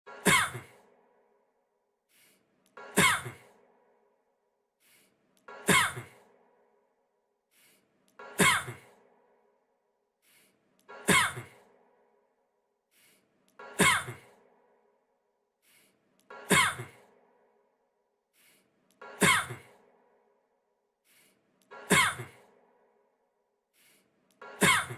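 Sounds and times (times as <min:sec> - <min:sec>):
man coughing: 0:02.9 - 0:03.5, 0:05.6 - 0:06.2, 0:08.4 - 0:08.9, 0:11.0 - 0:11.6, 0:13.8 - 0:14.3, 0:16.5 - 0:17.0, 0:21.9 - 0:22.4.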